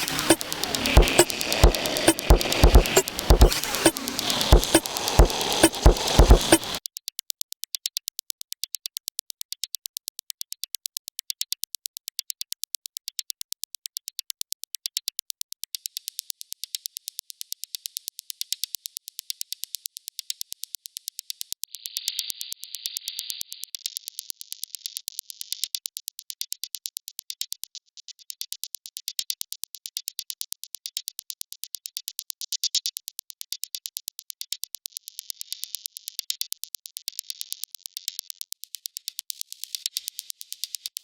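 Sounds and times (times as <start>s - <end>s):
fast hissy ticks: 0.0s - 6.8s.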